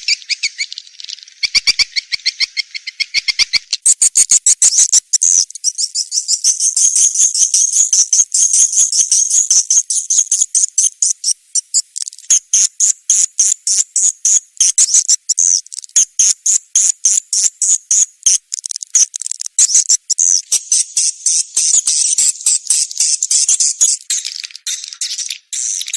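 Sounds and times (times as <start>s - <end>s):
bird chirps high-pitched: 0.0s - 7.8s, 19.6s - 25.9s.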